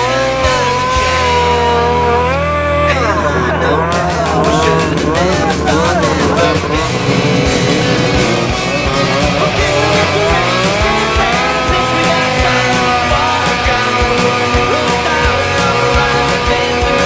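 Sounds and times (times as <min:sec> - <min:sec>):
rock music with distorted guitars: 0:00.0 - 0:17.0
drum beat: 0:02.9 - 0:17.0.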